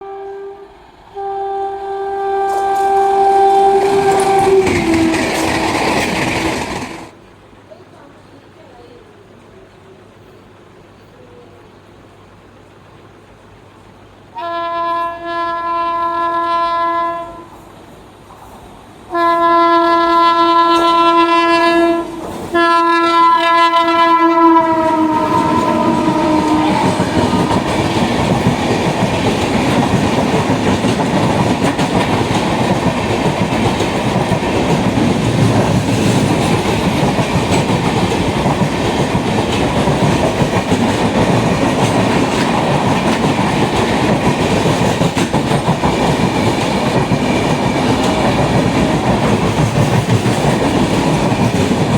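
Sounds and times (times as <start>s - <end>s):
locomotive air horn: 0.0s - 6.0s, 14.4s - 17.6s, 19.1s - 27.8s
train rushing past: 0.0s - 8.3s, 13.0s - 51.9s
wheel clatter on rails: 3.7s - 7.2s, 24.9s - 51.9s.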